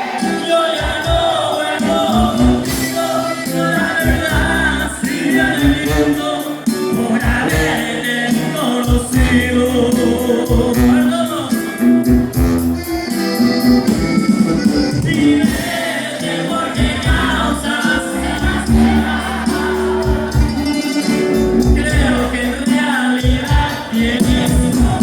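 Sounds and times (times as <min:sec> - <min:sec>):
band music with bass beat: 0:00.0 - 0:25.0.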